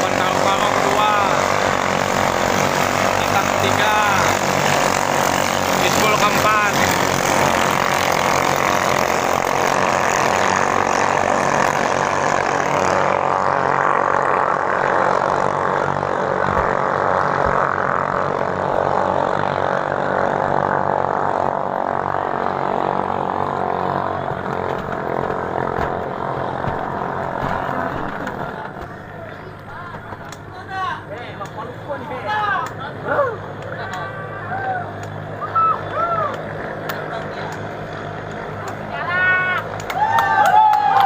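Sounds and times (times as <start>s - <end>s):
racing boat engines roaring: 0.0s - 41.0s.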